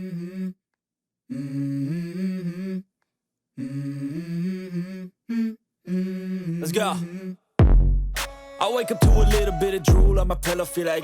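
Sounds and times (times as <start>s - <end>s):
hummed vocal melody: 0.0s - 0.6s, 1.3s - 2.9s, 3.6s - 7.4s, 8.3s - 11.0s.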